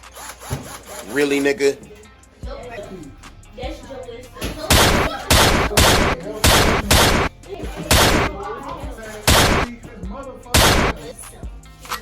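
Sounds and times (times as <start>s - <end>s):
loud harsh noise bursts: 4.7s - 7.3s, 7.9s - 8.4s, 9.3s - 9.7s, 10.6s - 11.0s.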